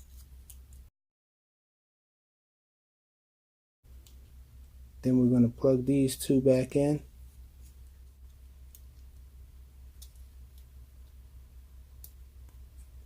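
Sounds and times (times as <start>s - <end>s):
steady low hum: 3.9s - 13.0s.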